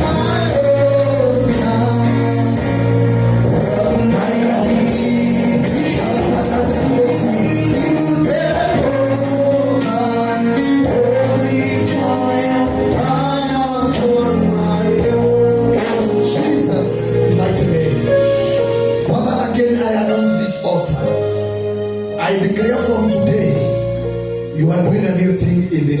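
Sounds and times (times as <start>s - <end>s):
gospel singing voices: 0.0s - 23.9s
sustained keyboard chords: 0.0s - 26.0s.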